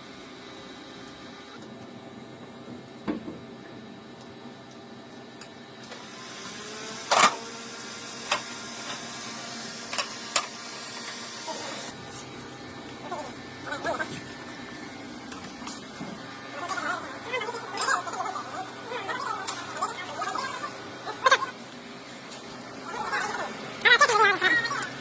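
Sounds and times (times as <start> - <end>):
steady machine hum: 0.0 - 25.0.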